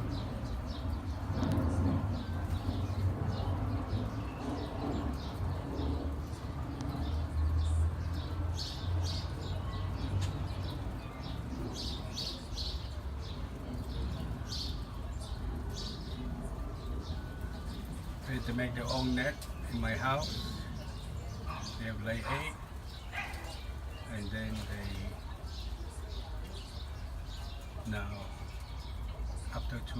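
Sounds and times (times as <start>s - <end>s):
nestling birds chirping: 0.0s - 29.9s.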